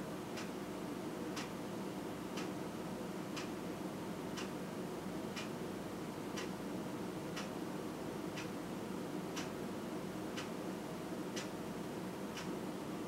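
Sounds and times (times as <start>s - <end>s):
faint room noise hiss: 0.0s - 13.0s.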